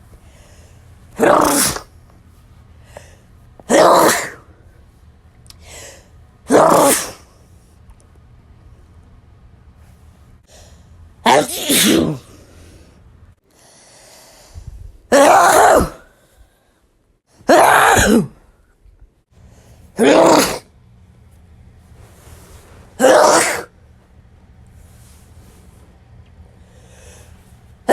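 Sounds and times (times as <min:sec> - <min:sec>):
person sneezing: 0:01.2 - 0:01.9, 0:03.7 - 0:04.5, 0:05.7 - 0:07.3, 0:11.2 - 0:12.6, 0:15.1 - 0:16.1, 0:17.4 - 0:18.5, 0:20.0 - 0:20.7, 0:23.0 - 0:23.7.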